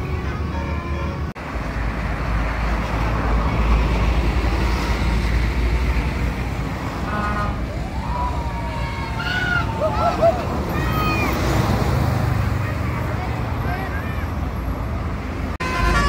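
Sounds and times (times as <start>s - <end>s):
bus engine rumbling: 0.0s - 16.0s
road noise: 0.0s - 16.0s.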